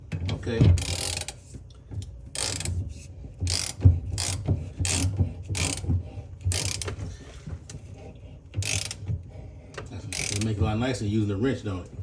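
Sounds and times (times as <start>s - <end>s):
ratchet wrench clicking: 0.8s - 1.4s, 2.4s - 2.8s, 3.5s - 5.8s, 6.5s - 7.0s, 8.6s - 9.0s, 10.1s - 10.6s.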